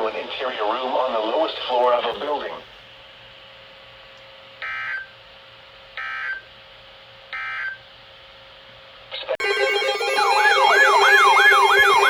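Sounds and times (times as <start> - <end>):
buzzy digital data tones: 9.4 - 12.0.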